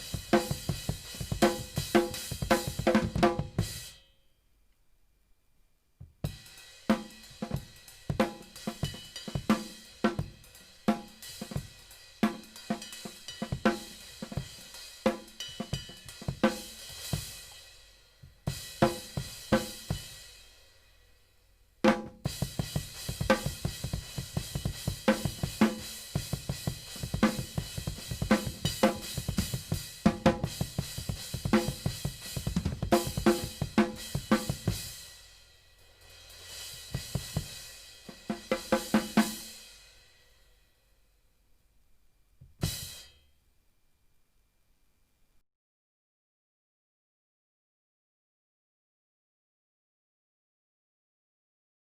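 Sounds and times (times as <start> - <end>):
snare drum: 0.0 - 3.8, 6.3 - 17.6, 18.5 - 20.0, 21.9 - 35.0, 36.8 - 39.6
cymbals: 0.0 - 4.1
bass drum: 21.9 - 35.0.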